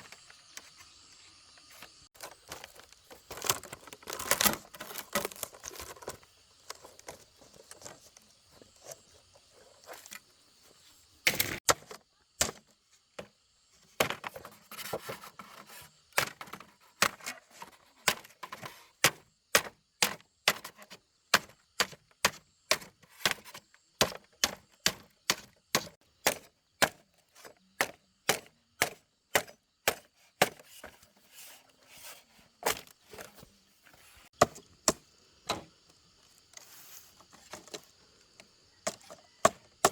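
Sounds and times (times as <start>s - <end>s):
hand tool striking wood: 18.0s - 31.0s, 34.3s - 35.7s, 38.9s - 39.9s.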